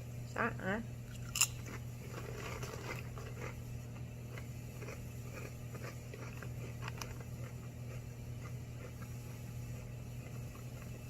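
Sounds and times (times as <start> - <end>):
crunching chips: 1.2 - 3.6, 4.3 - 9.0.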